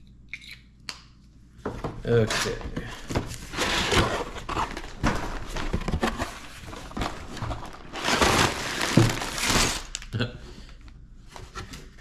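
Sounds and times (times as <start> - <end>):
cardboard box and plastic bags rustling: 2.2 - 10.1.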